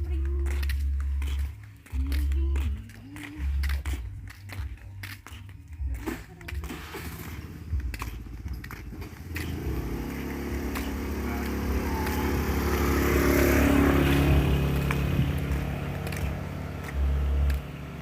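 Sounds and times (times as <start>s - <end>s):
vehicle engine approaching: 6.5s - 18.0s.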